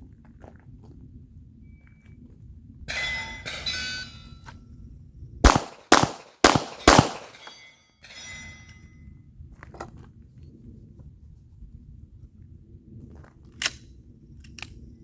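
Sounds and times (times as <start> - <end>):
handgun shots: 5.5 - 7.6.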